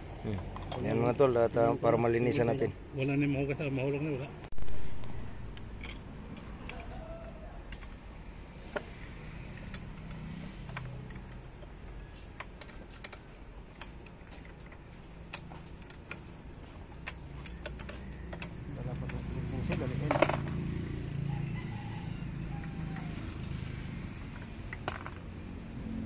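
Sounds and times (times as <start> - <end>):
metal tools clicking and tapping: 0.3 - 1.2, 5.4 - 21.1, 22.6 - 25.6.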